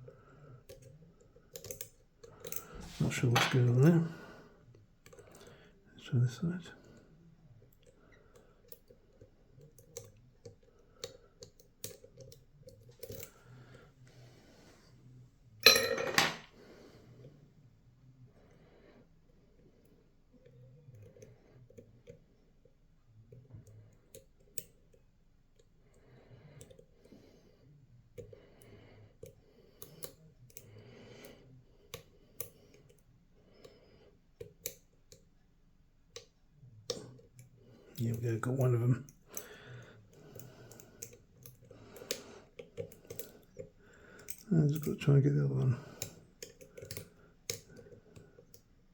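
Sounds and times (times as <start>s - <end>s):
lock picks clicking in a lock: 0.6s - 2.7s, 7.7s - 13.4s, 40.1s - 45.1s, 45.9s - 48.6s
lock picks clicking: 40.1s - 45.0s.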